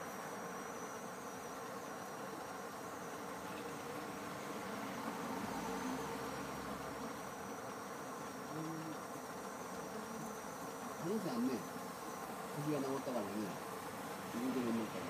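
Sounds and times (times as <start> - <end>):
outdoor background hiss: 0.0 - 15.0.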